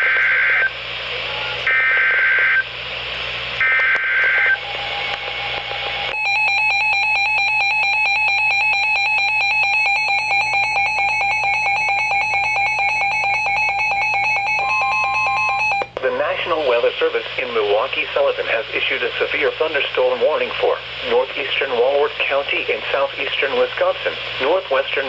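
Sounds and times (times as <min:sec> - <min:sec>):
radio hiss: 0:00.0 - 0:06.2, 0:16.0 - 0:25.0.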